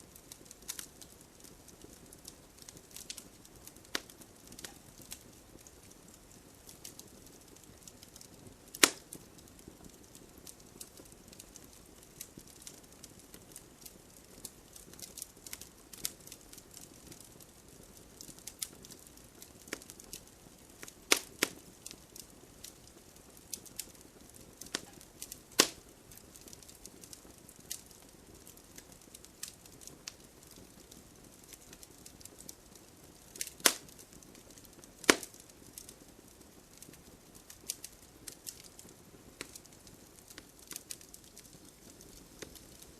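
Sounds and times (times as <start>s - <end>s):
fire crackling: 0.0s - 42.9s
fire hissing: 24.5s - 30.2s, 33.2s - 35.9s
loud wood pops: 25.6s - 25.8s, 35.0s - 35.3s.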